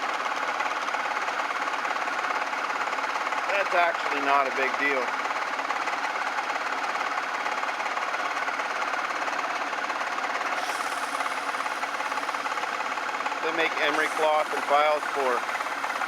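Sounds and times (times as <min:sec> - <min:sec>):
metal lathe rattling: 0:10.5 - 0:16.0
high hiss: 0:10.6 - 0:12.8, 0:13.7 - 0:16.0.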